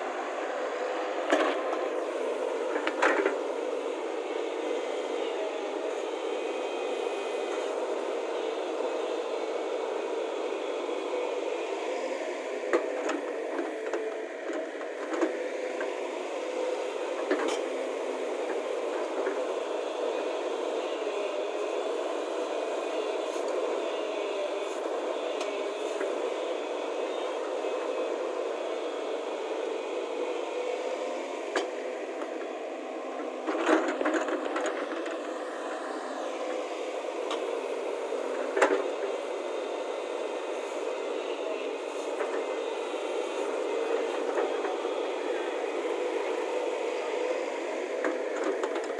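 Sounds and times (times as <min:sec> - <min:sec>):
excavator engine running: 0:00.0 - 0:48.9.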